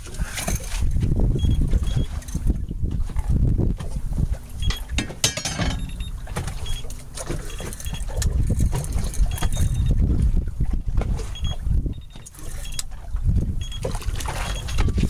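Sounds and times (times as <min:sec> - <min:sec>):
boat engine low rumble: 0:00.0 - 0:15.0
wind buffeting microphone: 0:00.0 - 0:15.0
knocks and clicks: 0:04.6 - 0:06.6.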